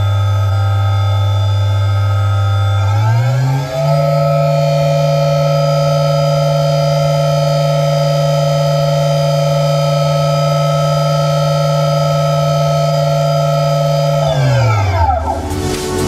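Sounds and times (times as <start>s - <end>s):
machine spindle whining: 0.0s - 16.0s.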